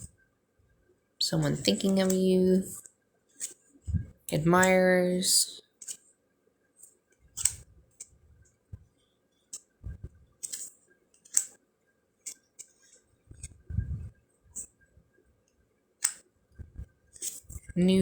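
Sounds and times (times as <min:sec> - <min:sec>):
soft low thumps: 0:03.9 - 0:04.2, 0:09.8 - 0:10.2, 0:13.3 - 0:14.2
card stock clicks and snaps: 0:05.8 - 0:06.0, 0:10.4 - 0:11.6.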